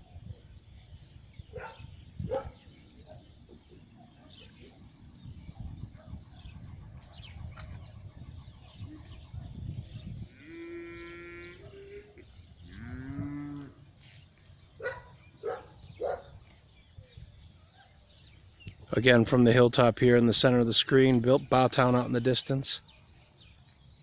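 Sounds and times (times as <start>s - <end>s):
cattle mooing: 10.3s - 13.8s.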